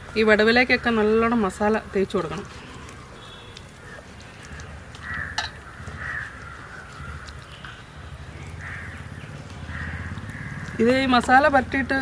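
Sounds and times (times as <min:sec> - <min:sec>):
crows cawing: 0:03.2 - 0:07.8, 0:08.5 - 0:11.0.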